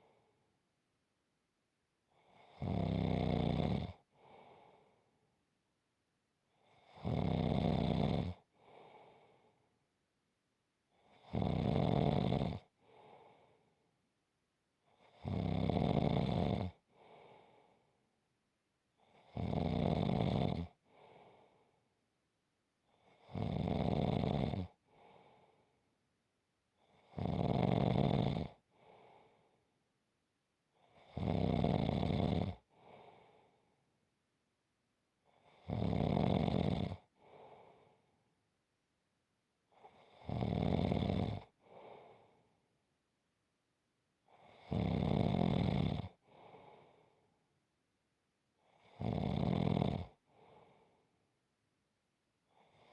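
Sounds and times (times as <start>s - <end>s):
person snoring: 2.2s - 5.0s, 6.7s - 9.4s, 11.1s - 13.6s, 15.0s - 17.7s, 19.1s - 21.6s, 23.0s - 25.6s, 26.8s - 29.5s, 30.9s - 33.5s, 35.3s - 38.0s, 39.8s - 42.4s, 44.3s - 47.1s, 48.6s - 50.9s.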